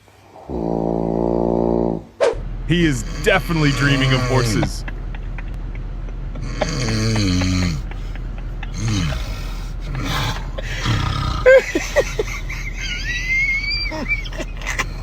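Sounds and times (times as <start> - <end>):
person snoring: 3.0 - 4.8, 6.4 - 12.5.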